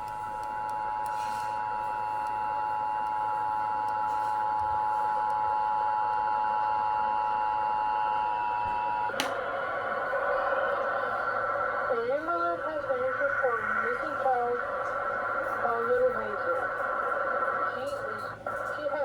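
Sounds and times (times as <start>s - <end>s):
dual-tone alarm: 0.0s - 19.0s
click: 9.1s - 9.4s.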